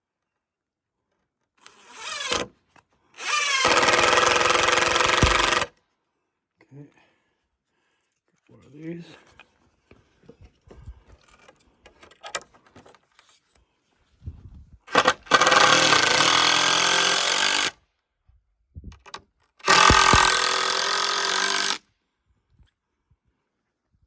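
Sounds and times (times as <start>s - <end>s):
power driver driving screws: 1.6s - 2.5s, 3.2s - 5.7s, 14.9s - 17.8s, 19.0s - 21.8s.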